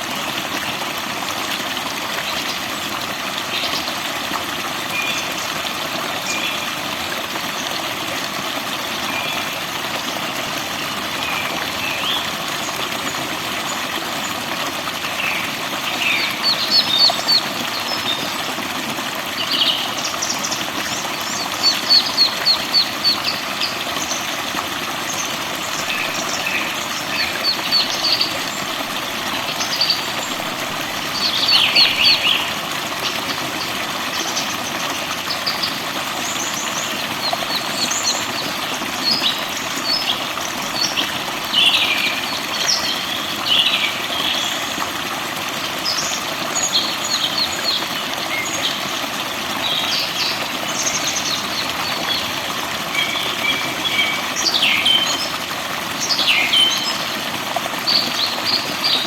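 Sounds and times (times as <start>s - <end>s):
songbirds chirping and trilling: 25.2s - 33.2s.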